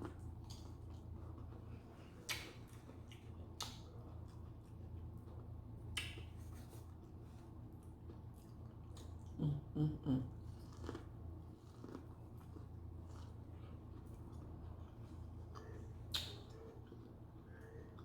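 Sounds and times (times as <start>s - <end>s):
chewing and crunching: 0.0s - 9.4s, 10.3s - 18.0s
person humming: 9.4s - 10.3s.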